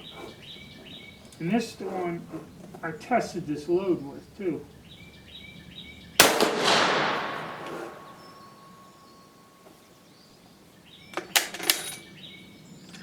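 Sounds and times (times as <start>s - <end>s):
rifle shot: 6.2s - 8.6s.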